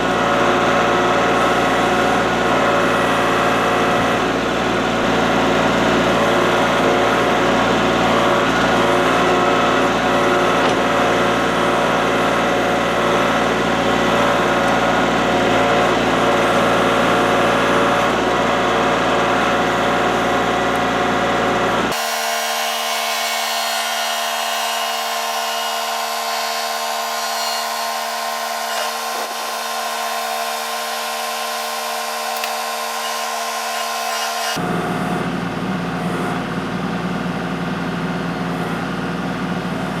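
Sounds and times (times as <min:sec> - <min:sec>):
tractor diesel engine running: 0:00.0 - 0:40.0.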